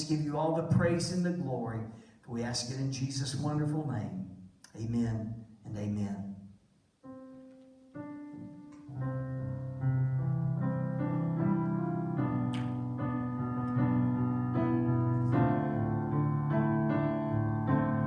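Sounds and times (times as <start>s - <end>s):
piano playing slow chords: 7.0s - 18.0s.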